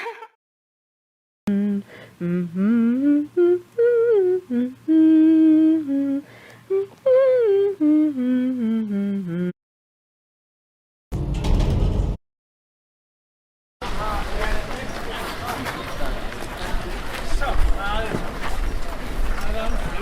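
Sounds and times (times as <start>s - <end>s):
person humming a tune: 1.5s - 9.6s.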